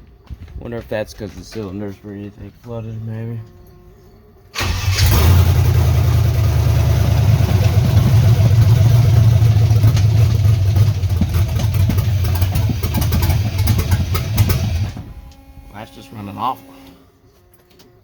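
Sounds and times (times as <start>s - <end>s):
truck engine running rough: 4.6s - 15.6s.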